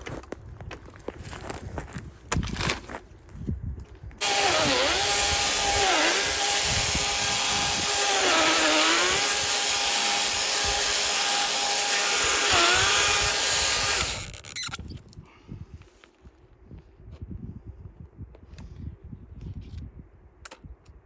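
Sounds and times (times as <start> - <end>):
electric chainsaw cutting wood: 4.2 - 14.7.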